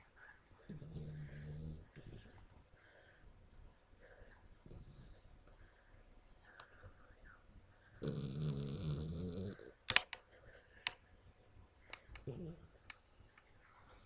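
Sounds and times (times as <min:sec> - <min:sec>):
dog snoring: 0:00.7 - 0:02.5, 0:08.0 - 0:09.8, 0:12.2 - 0:12.9
sharp clicks: 0:09.9 - 0:10.2.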